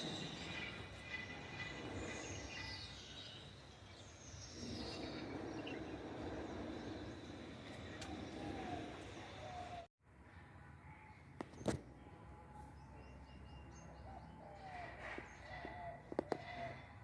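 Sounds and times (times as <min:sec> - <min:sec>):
birds calling: 0:00.0 - 0:09.9.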